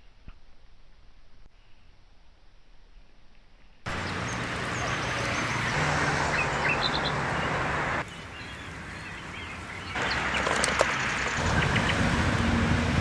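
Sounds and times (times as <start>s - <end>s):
birds chirping: 3.9s - 12.1s.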